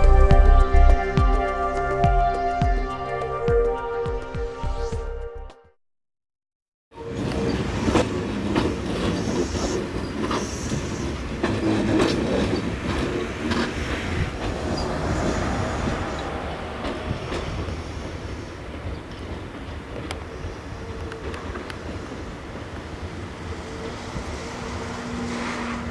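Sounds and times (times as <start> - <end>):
train rumble: 7.0 - 25.9
wheels clicking over rail joints: 7.0 - 25.9.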